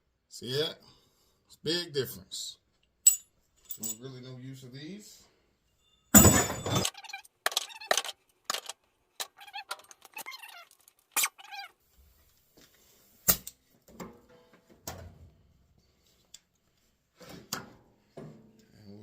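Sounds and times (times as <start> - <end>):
metal tools clinking and knocking: 3.0 - 4.1, 5.8 - 10.2.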